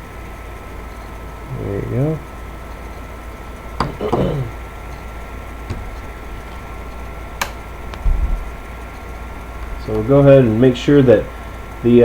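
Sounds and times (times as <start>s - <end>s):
faint steady whine: 0.0s - 12.0s
low thump: 5.7s - 6.3s, 8.0s - 8.5s.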